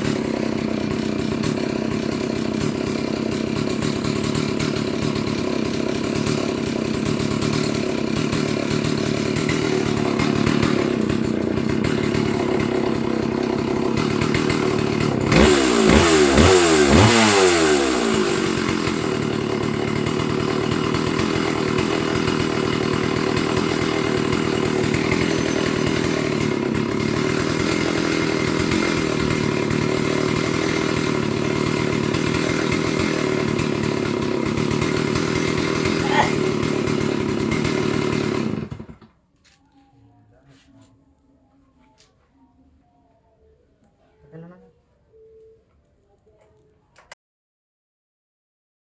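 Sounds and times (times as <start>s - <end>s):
chainsaw idling and revving: 0.0s - 39.2s.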